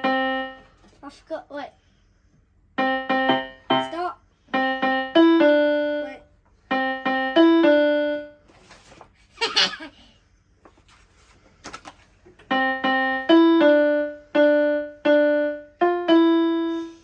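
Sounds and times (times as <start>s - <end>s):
electronic keyboard piano notes: 0.0s - 0.8s, 2.8s - 8.4s, 12.5s - 17.0s.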